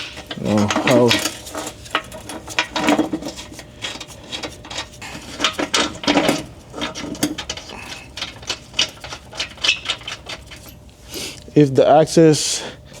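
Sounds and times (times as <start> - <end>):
hand ratchet clicking: 3.8 - 10.8.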